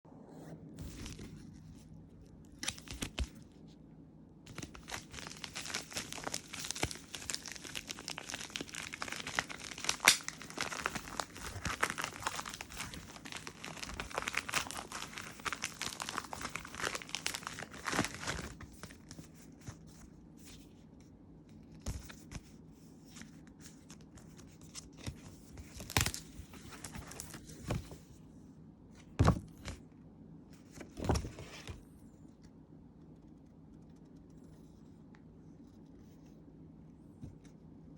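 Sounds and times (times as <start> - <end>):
packaging tearing and crinkling: 4.5 - 18.9.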